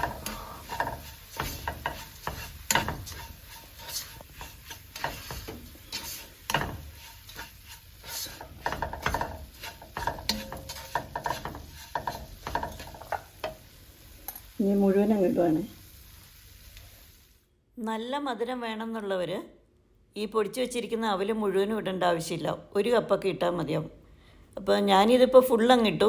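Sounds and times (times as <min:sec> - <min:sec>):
spoon scraping a pan: 0:00.0 - 0:14.6.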